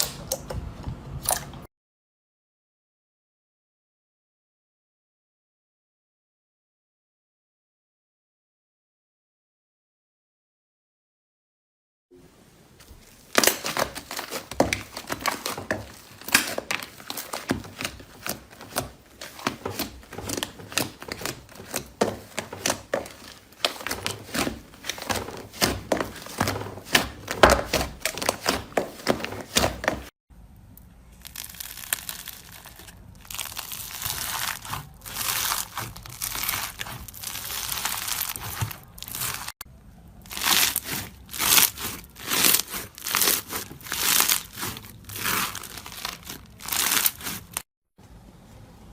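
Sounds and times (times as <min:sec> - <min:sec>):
slime crackling and popping: 0:13.0 - 0:30.1, 0:31.1 - 0:39.5, 0:40.2 - 0:47.6.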